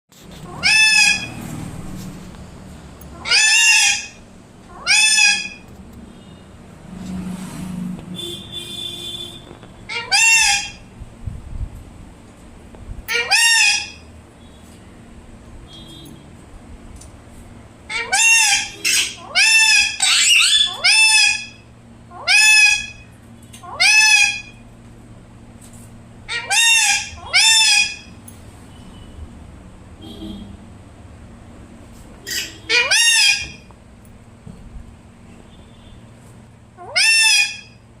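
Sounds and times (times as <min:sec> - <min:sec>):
parrot calling loudly: 0:00.4 - 0:01.6, 0:03.1 - 0:05.7, 0:09.9 - 0:10.9, 0:13.1 - 0:14.1, 0:17.9 - 0:24.6, 0:26.2 - 0:28.2, 0:32.2 - 0:33.7, 0:36.8 - 0:37.8.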